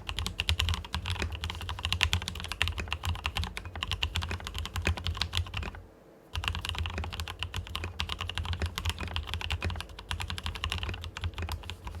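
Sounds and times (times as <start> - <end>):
mechanical keyboard typing: 0.0 - 12.0.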